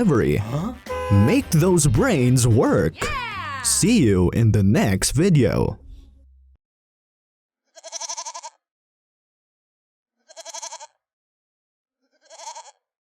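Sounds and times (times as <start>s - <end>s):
quavering bleats: 7.7s - 8.6s, 10.2s - 11.0s, 12.1s - 12.9s.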